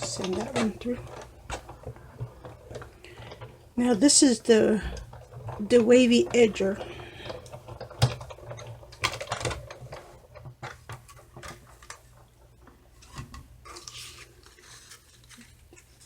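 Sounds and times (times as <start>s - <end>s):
paper rustling: 13.0s - 16.0s.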